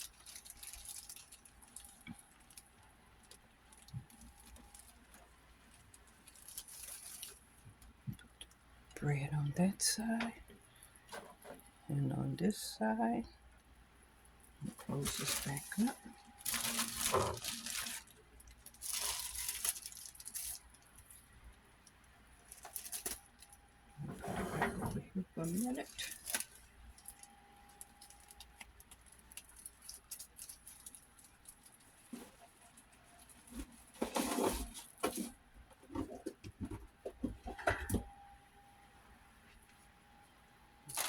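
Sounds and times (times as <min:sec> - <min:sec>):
rustling and crinkling handling: 0:00.0 - 0:08.7, 0:09.8 - 0:11.8, 0:14.3 - 0:38.3, 0:39.4 - 0:41.0
cookware scraping: 0:24.0 - 0:25.0.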